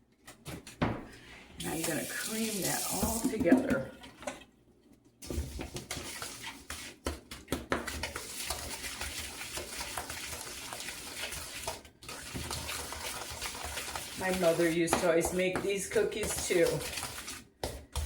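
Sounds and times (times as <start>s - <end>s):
batter being creamed in a bowl: 5.2s - 18.0s.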